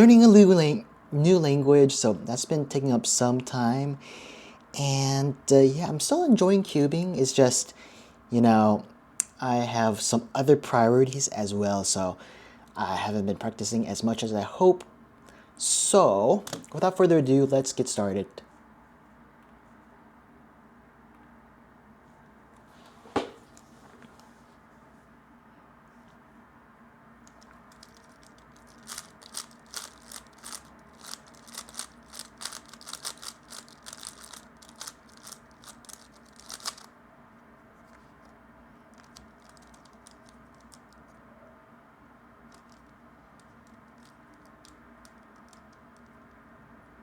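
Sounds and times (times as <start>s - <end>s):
plastic puzzle cube clicking: 27.3s - 36.9s, 38.9s - 41.1s, 42.5s - 46.2s.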